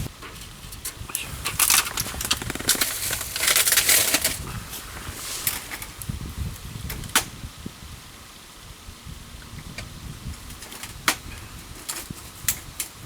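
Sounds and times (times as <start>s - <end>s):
campfire crackling: 0.0s - 13.0s.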